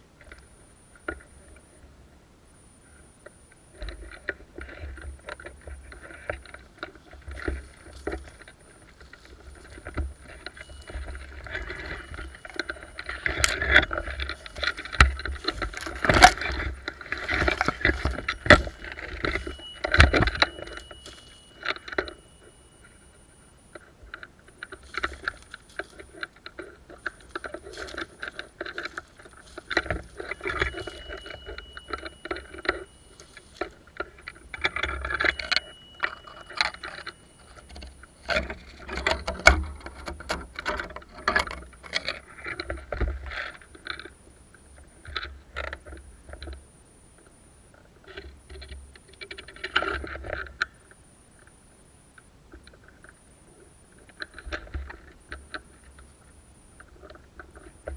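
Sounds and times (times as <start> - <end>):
rustling and crunching of brush: 5.5 - 23.1, 24.4 - 40.6
gear rattling: 9.0 - 23.0, 24.7 - 42.1.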